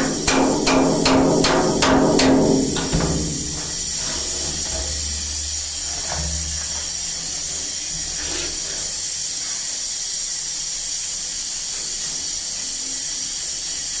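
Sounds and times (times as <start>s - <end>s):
welding arc hissing: 3.2s - 5.9s.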